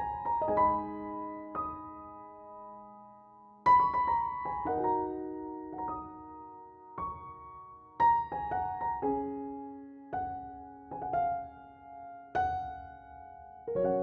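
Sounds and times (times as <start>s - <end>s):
soft slow piano: 0.0s - 14.0s.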